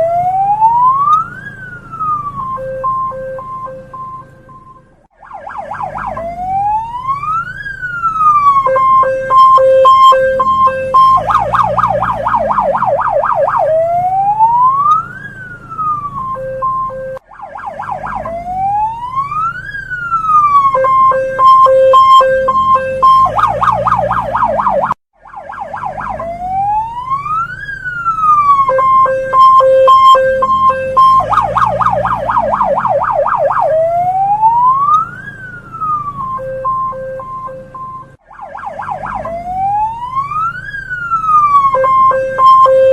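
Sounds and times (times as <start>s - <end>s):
police car siren wailing: 0.0s - 42.9s
siren short beeps: 2.4s - 4.9s, 8.5s - 13.7s, 16.2s - 17.2s, 20.6s - 25.0s, 28.6s - 33.7s, 36.0s - 38.2s, 41.6s - 42.9s
siren fast warbling yelp: 5.2s - 42.9s.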